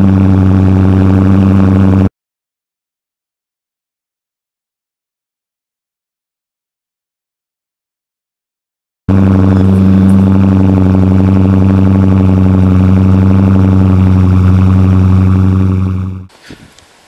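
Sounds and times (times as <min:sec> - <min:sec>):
car engine idling loudly: 0:00.0 - 0:02.1, 0:09.1 - 0:16.3.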